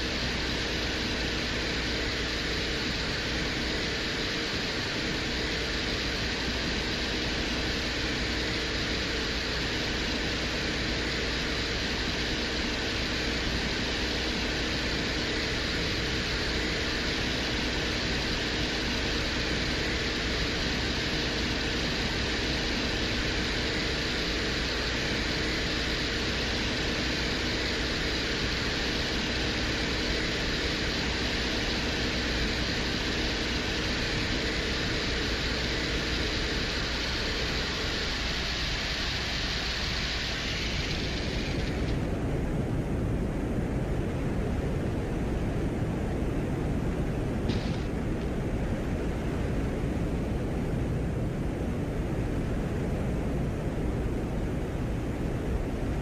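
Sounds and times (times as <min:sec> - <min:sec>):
even hiss: 0:00.0 - 0:43.3
steady hum: 0:00.0 - 0:56.0.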